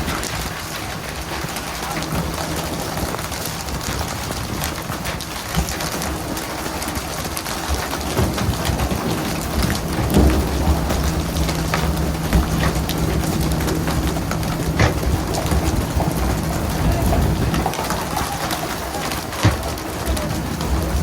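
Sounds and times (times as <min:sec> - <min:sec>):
boat engine humming: 0:00.0 - 0:21.0
water spraying and splashing: 0:00.0 - 0:21.0
sharp knocks: 0:08.0 - 0:21.0.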